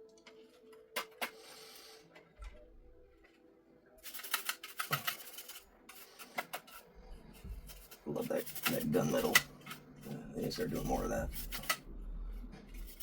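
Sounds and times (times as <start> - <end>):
computer parts clicking and rattling: 4.0 - 6.8.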